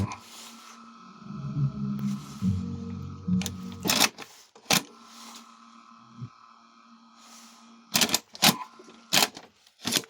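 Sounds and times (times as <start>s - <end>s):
car radio sound: 1.3s - 4.2s
faint hum from cassette deck: 2.8s - 10.0s.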